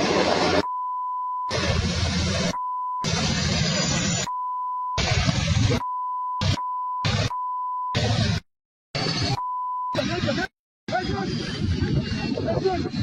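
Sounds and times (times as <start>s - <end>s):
loud noisy clip audio: 0.0s - 13.0s
censor beep tone: 0.6s - 1.6s, 2.5s - 3.1s, 4.2s - 5.1s, 5.8s - 8.1s, 9.3s - 10.0s.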